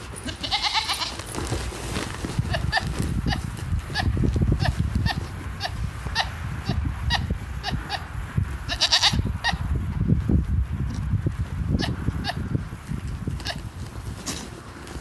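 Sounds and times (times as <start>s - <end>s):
low rumbling background noise: 0.0s - 15.0s
goat chirping calls: 0.2s - 1.2s.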